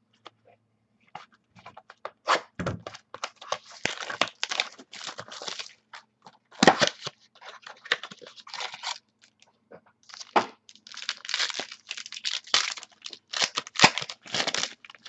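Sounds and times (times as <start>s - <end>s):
plastic packaging crinkling: 2.9s - 9.4s, 10.0s - 15.0s
loud plastic crack: 10.2s - 15.0s.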